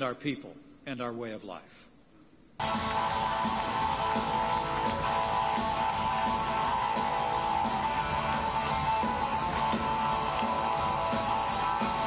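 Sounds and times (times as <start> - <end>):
strummed guitar music with beat: 2.6 - 12.0.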